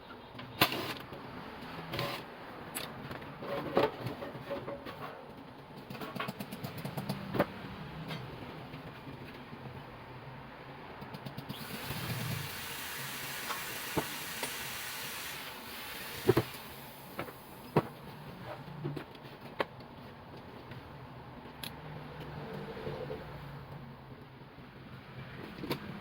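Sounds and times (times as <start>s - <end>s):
tools knocking and clicking: 2.7s - 9.7s, 11.0s - 11.7s.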